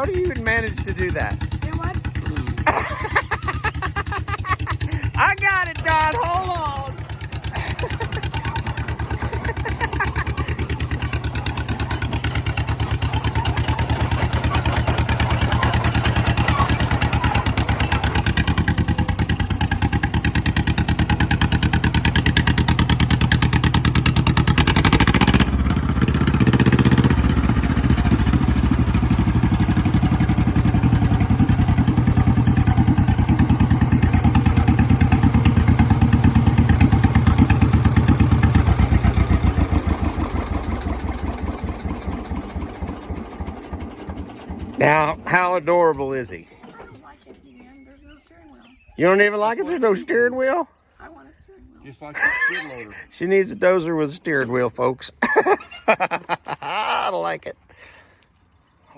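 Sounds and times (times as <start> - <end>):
dozer engine running: 0.0 - 58.8
clattering burst: 0.3 - 45.6.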